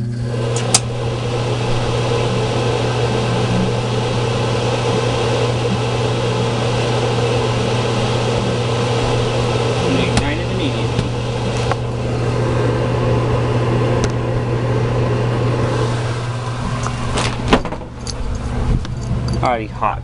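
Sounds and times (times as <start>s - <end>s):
furnace switching on click: 0.0s - 3.9s, 8.3s - 12.1s, 14.0s - 14.3s, 15.8s - 19.4s
furnace blower humming: 0.0s - 20.0s.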